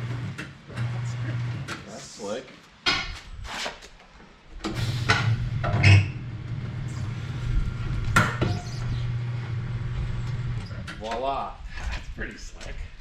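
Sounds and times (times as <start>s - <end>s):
air hissing: 4.7s - 9.2s
tire changer motor hum: 4.7s - 10.9s.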